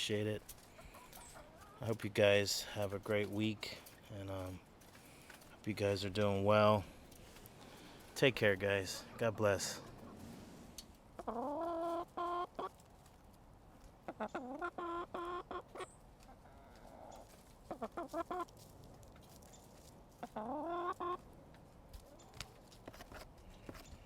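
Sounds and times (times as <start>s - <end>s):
hens squawking: 0.6s - 2.0s, 11.2s - 12.7s, 14.1s - 17.1s, 17.7s - 18.5s, 20.2s - 21.2s.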